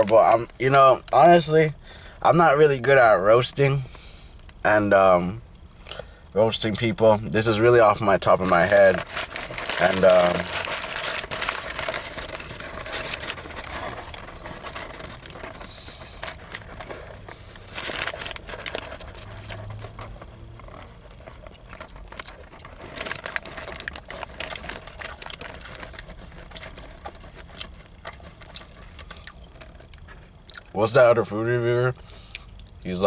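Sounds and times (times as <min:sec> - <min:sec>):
paper wrapper crinkling: 0:00.0 - 0:01.2, 0:06.8 - 0:30.6.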